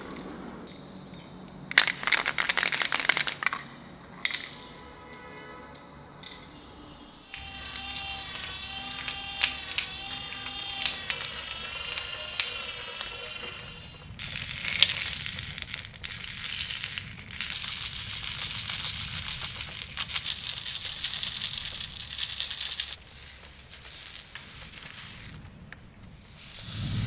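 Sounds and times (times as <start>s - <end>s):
small metal parts clinking: 1.7s - 4.8s, 6.2s - 6.6s, 7.3s - 25.4s.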